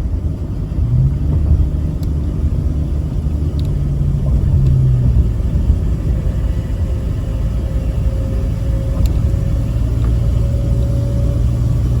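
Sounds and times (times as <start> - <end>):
steady low drone: 0.0 - 12.0.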